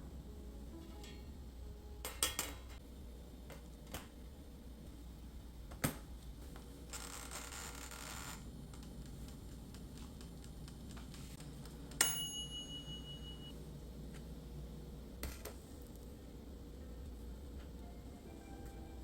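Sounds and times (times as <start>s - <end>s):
sharp metallic ding: 12.0s - 13.5s.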